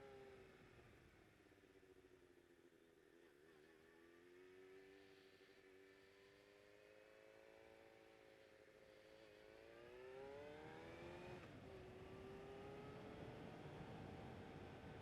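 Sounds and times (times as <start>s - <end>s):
faint motorcycle engine accelerating: 3.2s - 15.0s.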